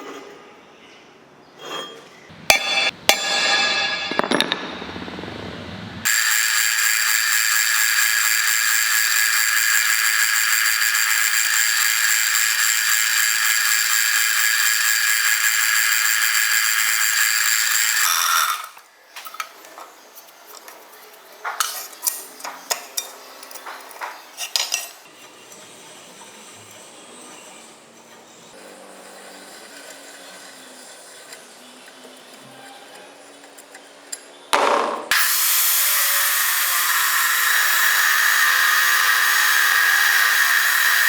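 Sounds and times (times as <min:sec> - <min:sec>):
cut-off disc cutting steel: 0:01.8 - 0:18.8, 0:35.1 - 0:41.0
metal pieces clinking: 0:04.1 - 0:04.6.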